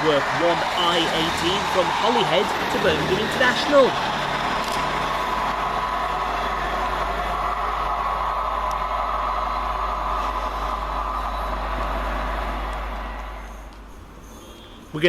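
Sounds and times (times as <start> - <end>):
train wheel noise: 0.0 - 7.3
diesel train engine: 0.0 - 15.0
steady whine: 0.0 - 15.0.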